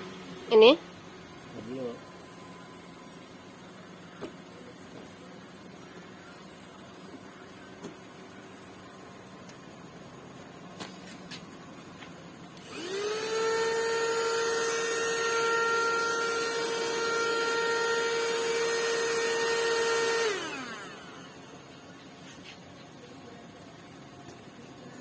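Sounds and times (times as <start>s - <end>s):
vacuum cleaner motor whine: 12.6s - 23.1s.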